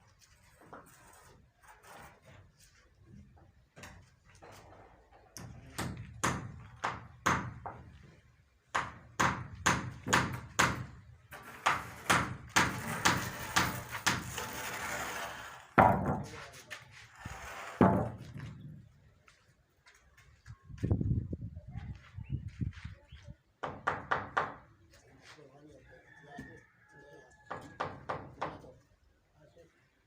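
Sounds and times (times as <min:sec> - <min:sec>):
sharp knocks: 0:08.8 - 0:10.9, 0:15.8 - 0:16.3.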